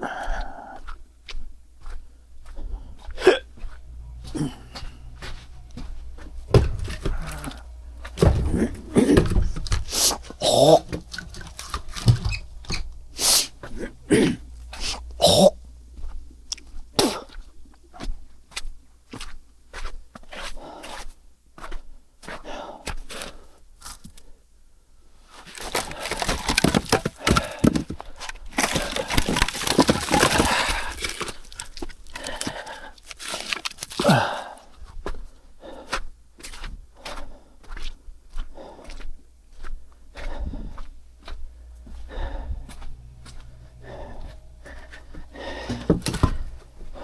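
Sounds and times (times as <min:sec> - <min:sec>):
crackling and rustling: 0:02.6 - 0:16.7, 0:25.3 - 0:34.3
firewood snapping and knocking: 0:05.8 - 0:15.5, 0:25.5 - 0:34.1, 0:45.4 - 0:46.6.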